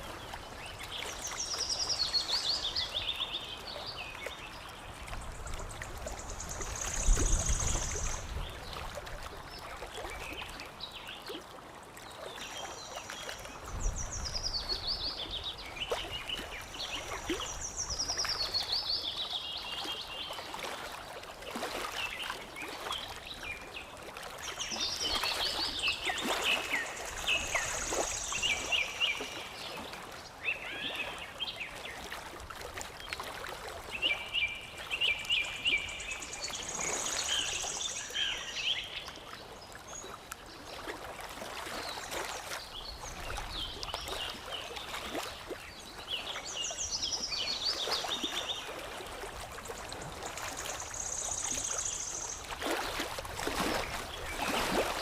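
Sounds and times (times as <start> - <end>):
water lapping and trickling: 0.0 - 55.0
songbirds singing: 24.5 - 32.0, 33.9 - 40.2.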